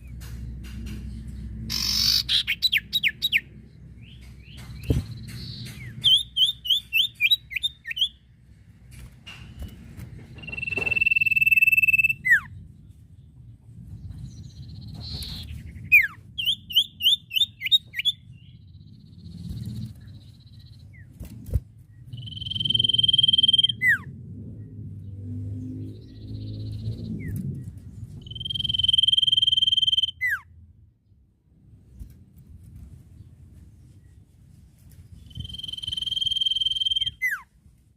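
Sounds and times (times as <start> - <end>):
low hum: 0.0 - 37.9
bird chirps and whistle: 1.7 - 3.5, 4.6 - 8.2, 10.4 - 12.5, 14.9 - 18.5, 22.1 - 24.1, 28.2 - 30.4, 35.2 - 37.4.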